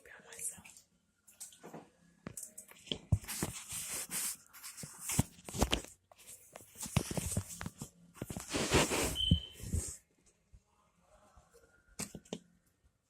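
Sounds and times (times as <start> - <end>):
rustling and scuffing: 3.0 - 10.0.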